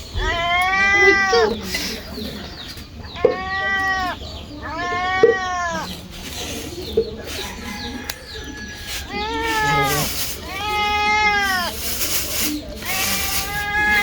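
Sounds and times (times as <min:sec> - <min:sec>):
cat meowing: 0:00.1 - 0:01.6, 0:03.2 - 0:05.9, 0:08.8 - 0:12.0, 0:12.8 - 0:14.0.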